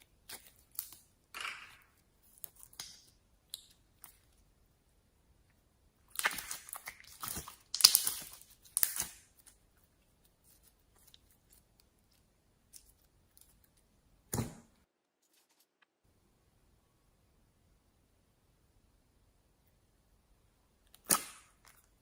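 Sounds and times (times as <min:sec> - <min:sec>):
slime squishing: 0:06.0 - 0:14.5
small slime pops: 0:06.1 - 0:09.2.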